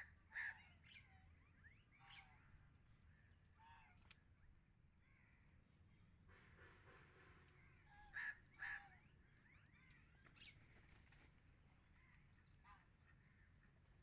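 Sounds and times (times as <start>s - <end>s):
faint calls of other birds: 0.0s - 14.0s
loud bird calls: 6.3s - 11.2s.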